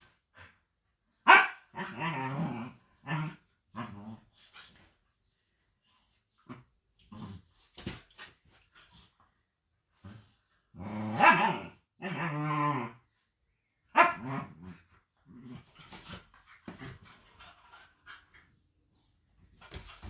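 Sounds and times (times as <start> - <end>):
puppy bark: 1.2 - 1.6, 11.2 - 11.6, 14.0 - 14.2.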